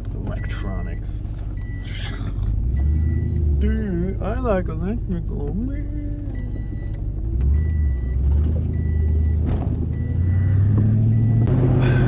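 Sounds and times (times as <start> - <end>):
vehicle engine running: 0.0 - 12.0
high electronic beep: 2.8 - 3.4, 7.6 - 11.5.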